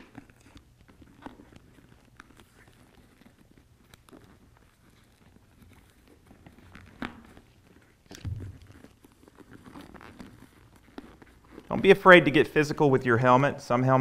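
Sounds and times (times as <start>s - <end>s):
helmet liner rustling: 0.0s - 14.0s
sharp knocks: 8.2s - 8.7s
heavy thump: 8.2s - 8.8s.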